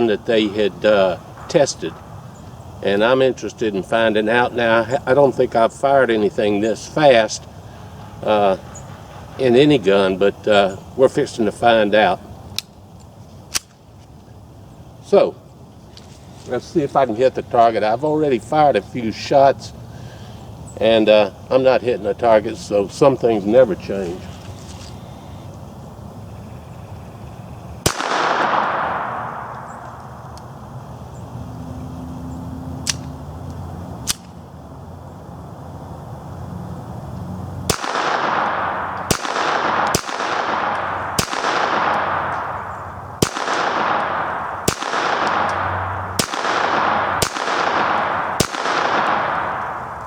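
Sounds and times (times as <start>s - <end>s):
pistol shots with echo: 27.8s - 30.2s, 37.7s - 50.0s.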